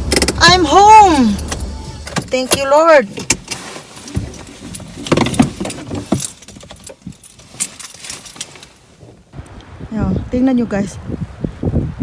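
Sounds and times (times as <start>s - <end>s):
clicks and jangling rattles: 0.0s - 8.8s.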